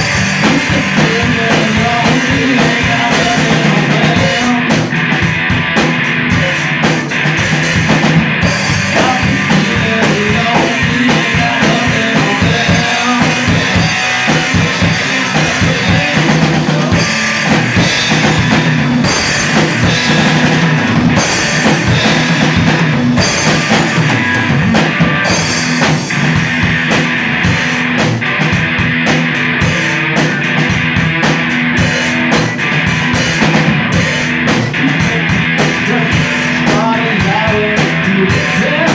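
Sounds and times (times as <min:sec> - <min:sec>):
drum kit: 0:00.0 - 0:38.9
electric guitar: 0:00.0 - 0:38.9
rock band playing live: 0:00.0 - 0:38.9.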